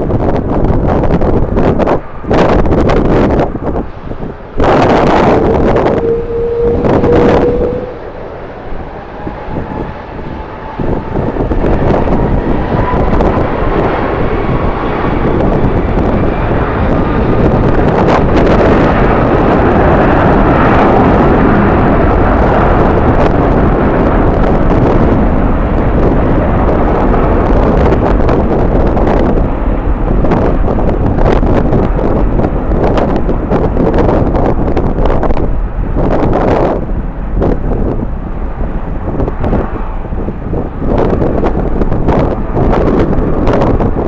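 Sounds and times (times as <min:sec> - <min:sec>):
jet engines roaring: 0:00.0 - 0:44.0
engine whine rising in pitch: 0:02.3 - 0:29.4.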